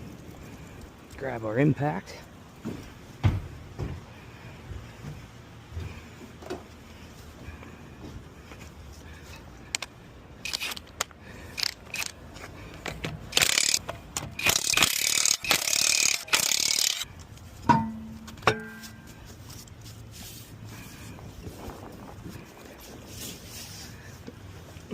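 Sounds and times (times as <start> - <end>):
impact wrench on lug nuts: 9.8 - 12.2, 12.8 - 17.1.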